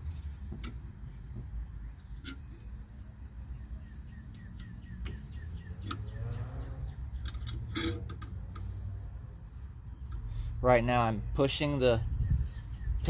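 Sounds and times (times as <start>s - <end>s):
metallic clicks of clamp screwing: 7.1s - 8.8s.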